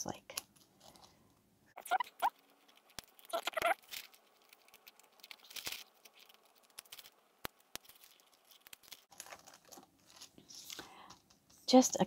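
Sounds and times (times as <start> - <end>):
paper rustling: 2.3 - 12.0.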